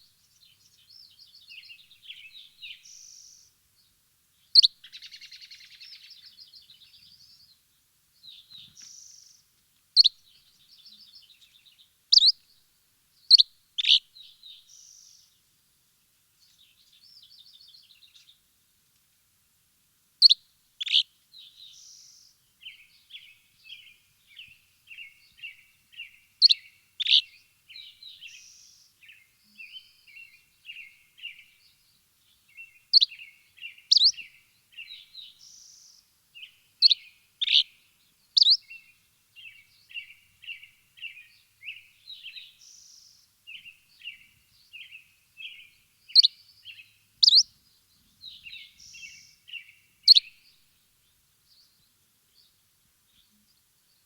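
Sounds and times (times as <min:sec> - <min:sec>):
songbirds chirping and singing: 0:13.3 - 0:14.9, 0:22.6 - 0:37.8, 0:38.4 - 0:50.5.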